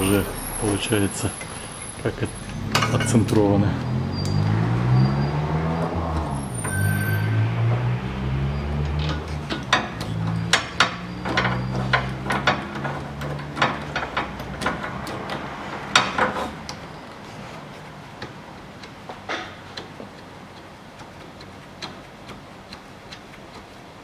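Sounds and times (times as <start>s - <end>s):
low steady hum: 0.0s - 15.9s
hand tools clinking on bolts: 0.0s - 22.5s.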